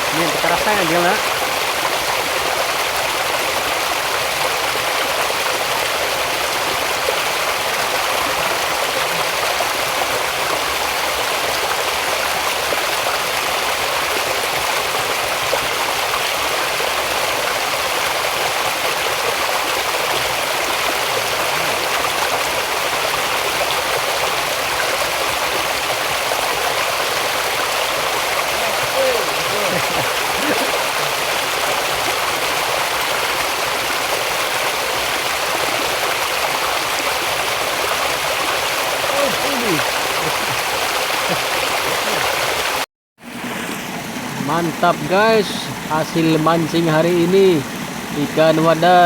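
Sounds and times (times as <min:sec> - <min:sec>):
stream water flowing: 0:00.0 - 0:49.0.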